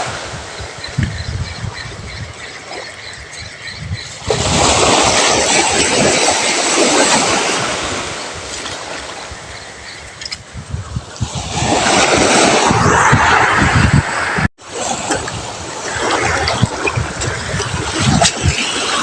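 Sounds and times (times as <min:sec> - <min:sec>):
wind buffeting microphone: 0:00.0 - 0:19.0
sea wave breaking: 0:04.2 - 0:09.8, 0:11.2 - 0:19.0.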